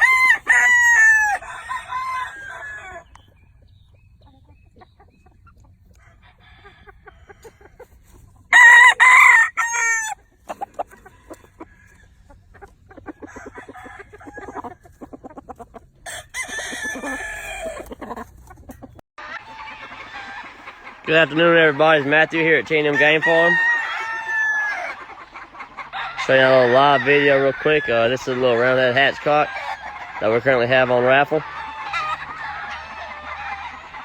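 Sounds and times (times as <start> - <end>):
rooster crowing: 0.0 - 3.1, 8.5 - 10.2, 16.1 - 17.8, 22.8 - 25.1, 25.9 - 28.1.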